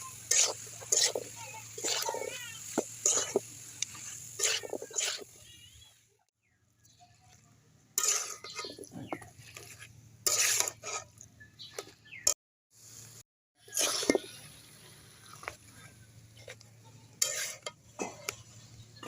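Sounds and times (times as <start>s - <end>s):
metal utensil scraping a cooking pan: 0.0s - 5.4s, 8.0s - 11.2s, 13.6s - 14.4s, 16.4s - 18.6s.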